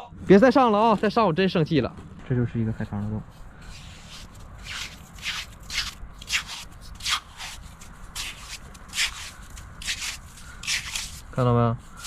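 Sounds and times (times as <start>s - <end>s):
scraping in wet sand: 2.8s - 12.0s.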